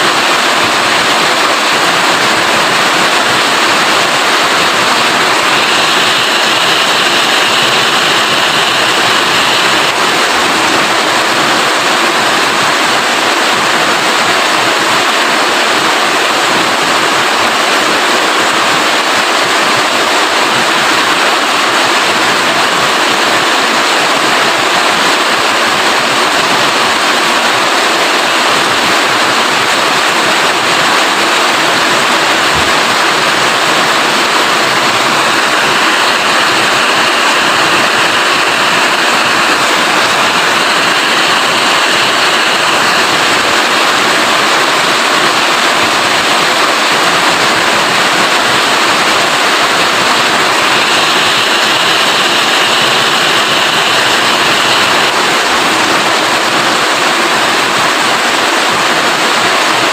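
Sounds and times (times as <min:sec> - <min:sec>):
heavy rain falling: 0:00.0 - 0:59.9.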